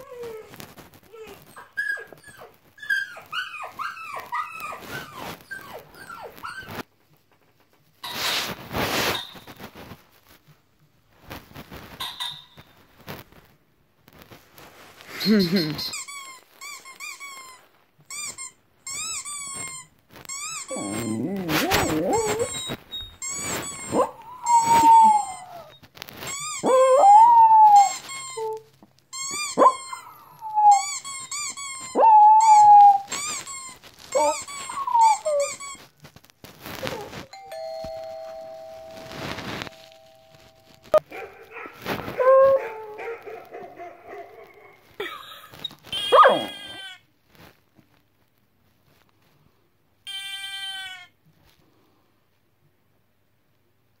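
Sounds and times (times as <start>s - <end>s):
dog whining and yelping: 0.0s - 6.9s, 20.4s - 35.8s, 36.7s - 47.0s
two-note doorbell chime: 37.4s - 40.7s.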